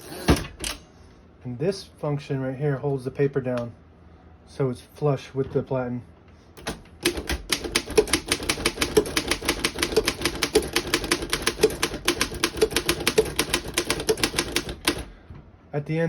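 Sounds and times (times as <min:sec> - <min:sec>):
manual typewriter typing: 0:06.6 - 0:15.1.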